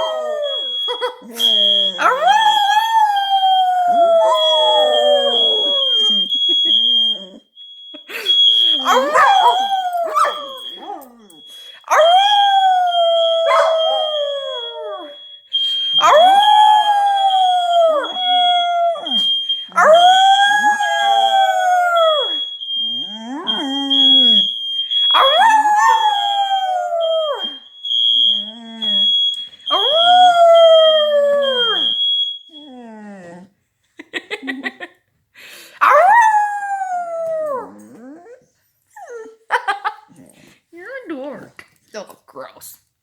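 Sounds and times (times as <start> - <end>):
smoke alarm beeping: 0.0 - 32.6
dog howling: 8.8 - 12.6, 13.2 - 14.2.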